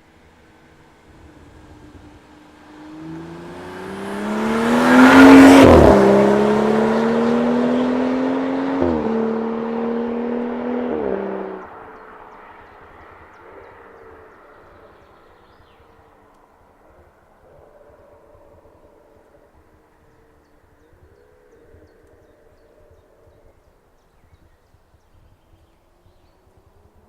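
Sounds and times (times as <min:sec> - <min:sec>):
car engine accelerating past: 0:00.5 - 0:16.3.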